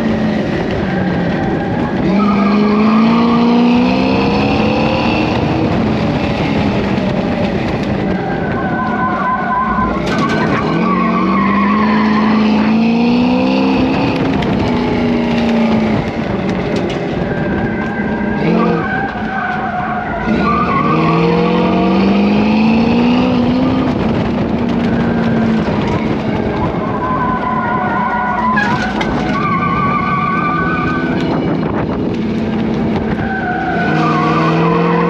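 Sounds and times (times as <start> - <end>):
truck engine revving: 0.0 - 35.0
tires squealing and skidding: 0.3 - 32.0, 32.8 - 35.0.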